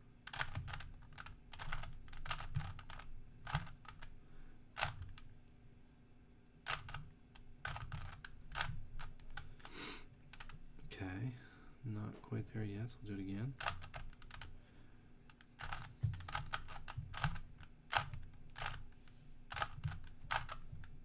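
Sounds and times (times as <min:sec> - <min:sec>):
puzzle cube plastic clicking: 0:00.3 - 0:04.1, 0:04.8 - 0:05.3, 0:06.7 - 0:10.6, 0:13.6 - 0:14.6, 0:15.3 - 0:21.0.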